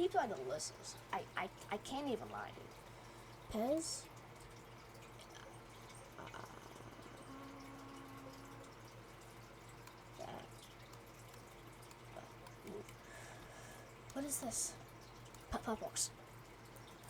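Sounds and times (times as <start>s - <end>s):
faint small clicks: 10.6s - 13.0s.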